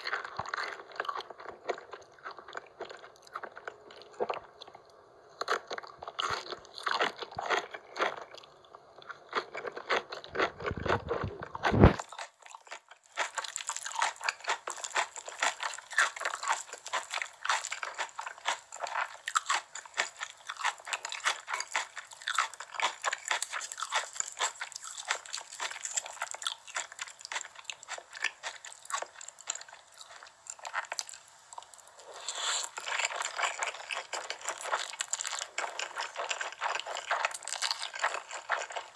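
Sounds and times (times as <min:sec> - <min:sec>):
crunching fried chicken: 0:00.0 - 0:38.9.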